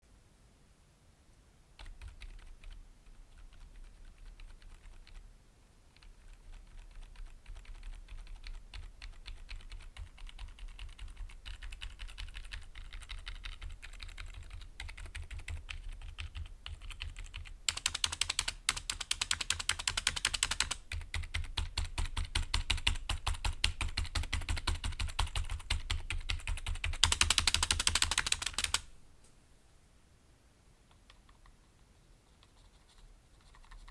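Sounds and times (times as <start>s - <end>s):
typing on mechanical keyboard: 1.8s - 5.2s, 6.0s - 28.9s.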